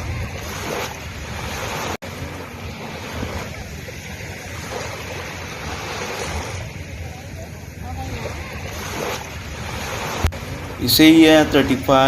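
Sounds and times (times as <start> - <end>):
sea waves breaking on beach: 0.0 - 12.0.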